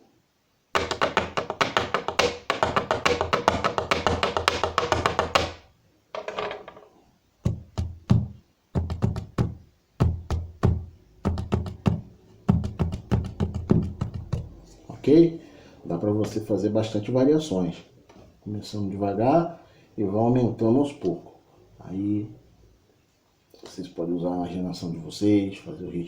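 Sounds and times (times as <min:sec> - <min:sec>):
hands drumming on wooden table: 0:00.7 - 0:05.6, 0:07.4 - 0:14.6.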